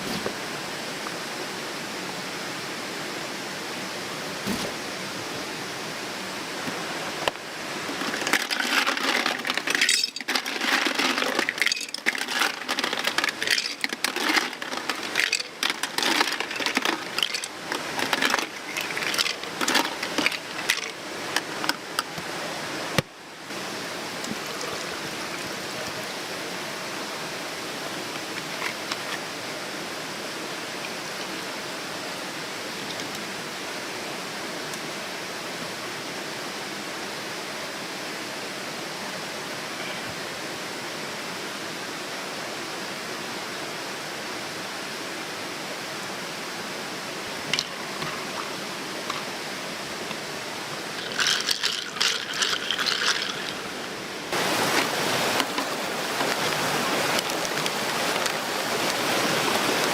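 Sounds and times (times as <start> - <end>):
steady rushing hiss: 0.0 - 59.9
small hard objects clattering: 7.9 - 21.8, 51.0 - 53.7.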